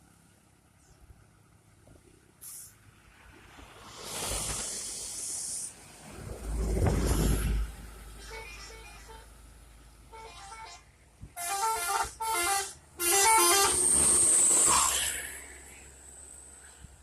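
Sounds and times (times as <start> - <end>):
rush of noise: 3.3 - 7.8
bus horn playing a tune: 10.1 - 14.9.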